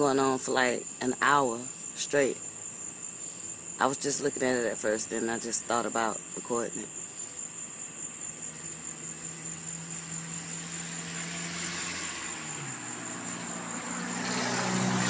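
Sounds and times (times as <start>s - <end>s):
crickets trilling: 0.0s - 15.0s
vehicle approaching: 8.3s - 15.0s.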